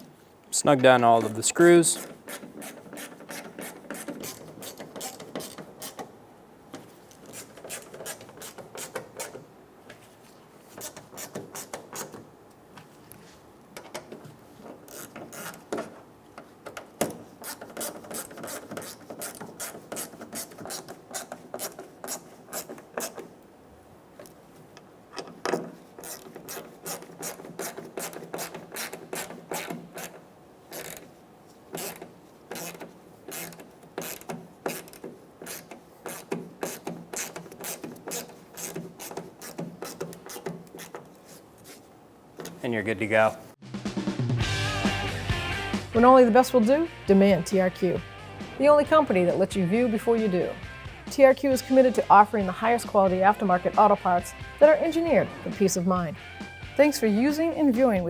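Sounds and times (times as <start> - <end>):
hand ratchet clicking: 2.0 - 6.1, 25.2 - 31.1, 31.8 - 41.2.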